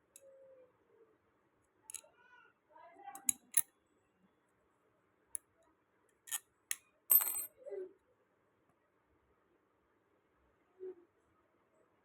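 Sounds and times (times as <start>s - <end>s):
small metal pieces clinking: 7.1s - 7.5s.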